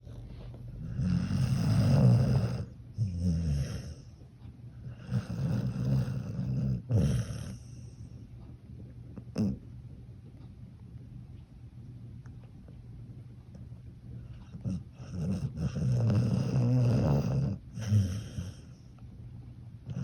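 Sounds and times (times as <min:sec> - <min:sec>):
dog snoring: 0:00.1 - 0:09.8, 0:14.1 - 0:19.0.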